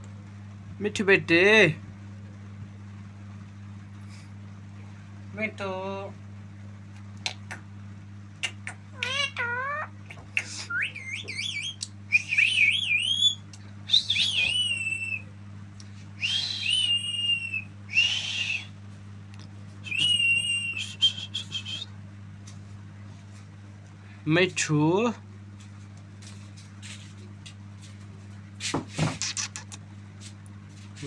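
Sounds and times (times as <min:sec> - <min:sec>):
low electrical hum: 0:00.0 - 0:31.0
parrot whistling and squawking: 0:08.4 - 0:15.2, 0:16.2 - 0:18.7, 0:19.9 - 0:21.9, 0:29.0 - 0:29.8.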